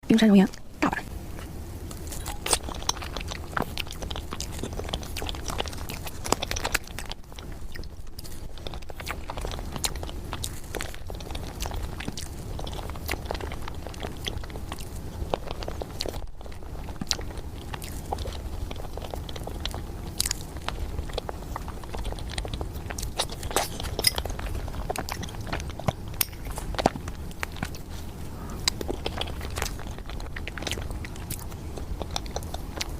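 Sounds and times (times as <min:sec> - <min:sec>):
steady low hum: 0:00.0 - 0:32.9
close chewing and biting: 0:00.3 - 0:32.9.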